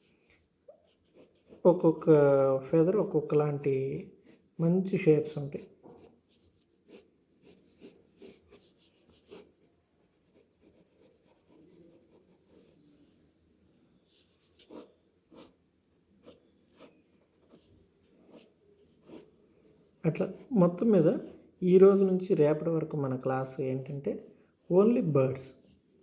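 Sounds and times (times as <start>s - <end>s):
drawing strokes scratching paper: 0.8s - 4.6s, 5.6s - 13.1s, 14.1s - 22.1s.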